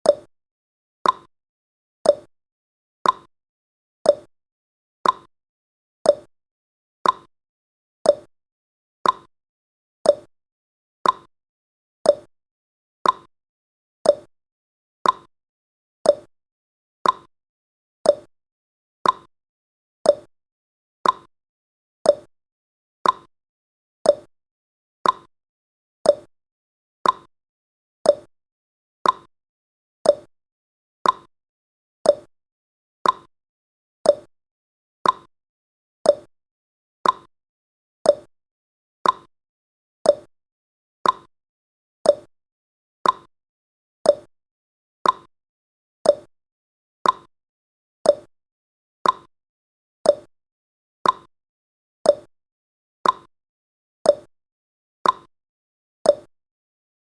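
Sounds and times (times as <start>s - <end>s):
clock ticking: 17.0s - 17.3s, 33.0s - 33.3s, 37.0s - 37.3s, 41.0s - 41.3s, 47.0s - 47.3s, 49.0s - 49.3s.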